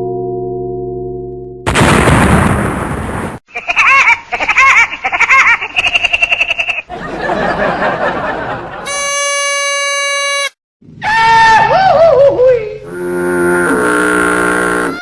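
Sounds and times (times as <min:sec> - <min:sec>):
cartoon explosion: 0:01.7 - 0:03.4.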